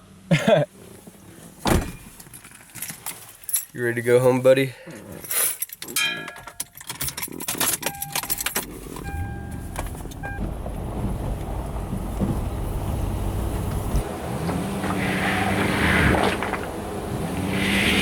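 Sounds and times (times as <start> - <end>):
keys jangling: 2.0 - 3.8, 5.1 - 10.2
vehicle engine starting and idling: 7.8 - 17.2.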